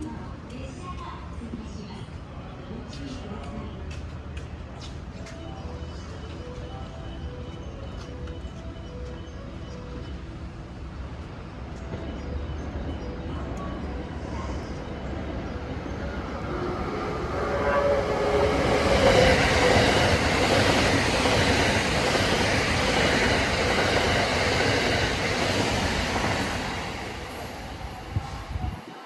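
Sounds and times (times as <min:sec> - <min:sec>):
train passing at speed: 0:00.0 - 0:29.0
musical train horn: 0:17.3 - 0:19.7.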